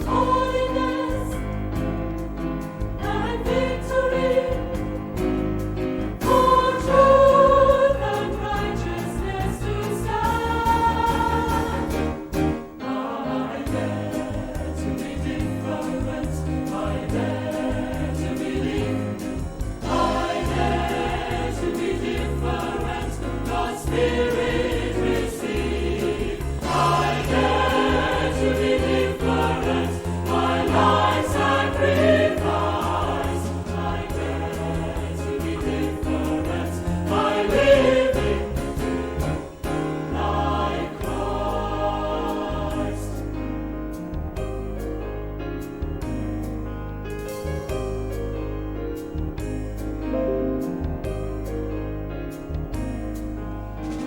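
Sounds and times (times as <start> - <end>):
choir singing worship song: 0.0 - 44.6, 49.4 - 54.0
instrumental backing with bass beat: 43.4 - 54.0.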